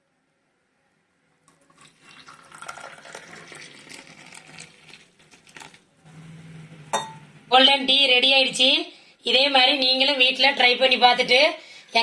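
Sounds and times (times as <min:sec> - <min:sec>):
tea pouring into a cup: 0:01.4 - 0:05.9.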